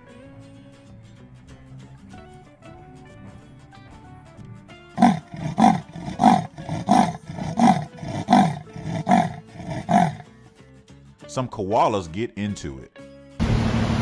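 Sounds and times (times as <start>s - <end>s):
faint background music: 0.0s - 13.4s
koala bellowing: 5.0s - 10.4s.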